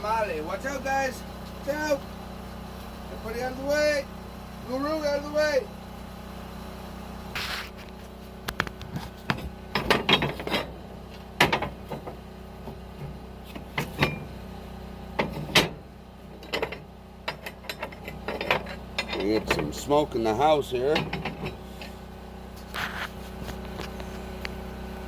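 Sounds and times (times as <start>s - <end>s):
stove hardware clanking: 9.3s - 10.8s, 11.4s - 14.4s, 15.2s - 15.8s, 16.4s - 20.0s, 20.8s - 22.0s.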